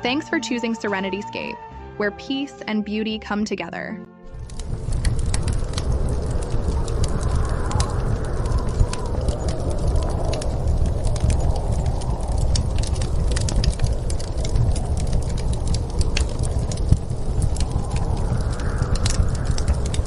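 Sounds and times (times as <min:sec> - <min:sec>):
fire crackling and popping: 0:04.2 - 0:20.0
snowstorm wind rumbling: 0:04.3 - 0:20.0.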